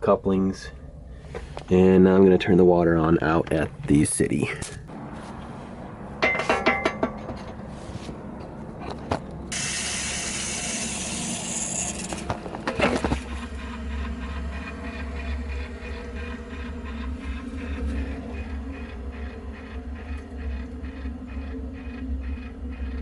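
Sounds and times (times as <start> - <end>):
low steady hum: 0.0 - 23.0
metal clanks: 6.2 - 7.6
water rushing hiss: 9.5 - 12.2.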